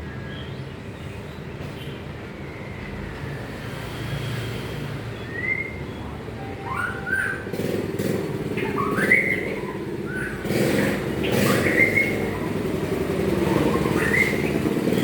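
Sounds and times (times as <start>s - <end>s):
traffic rumble: 0.0s - 15.0s
songbird whistling: 5.1s - 15.0s.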